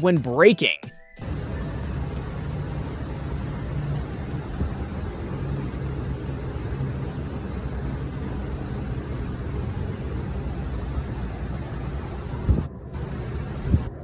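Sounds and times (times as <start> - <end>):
car road rumble: 9.3 - 14.0.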